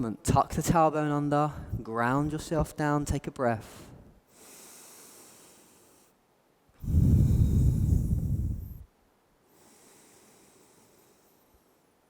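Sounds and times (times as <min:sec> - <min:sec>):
person breathing deeply: 0:03.8 - 0:06.2, 0:06.8 - 0:08.9, 0:09.5 - 0:11.8.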